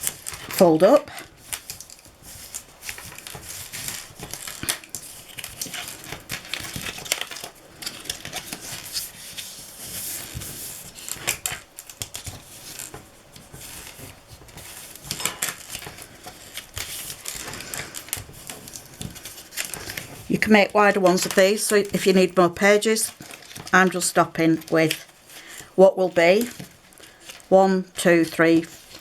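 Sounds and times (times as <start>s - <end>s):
cardstock rustling and scraping: 0.0s - 29.0s.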